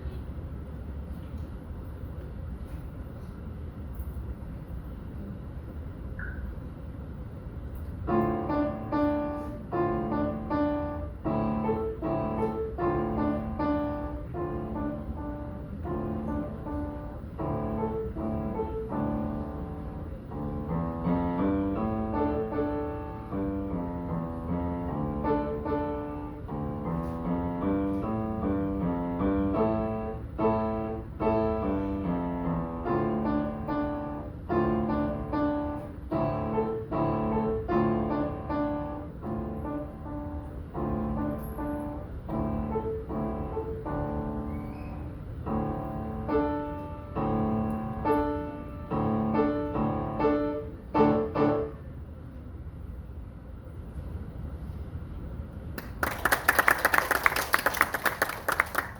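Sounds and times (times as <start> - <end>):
solo piano playing: 8.1 - 51.9.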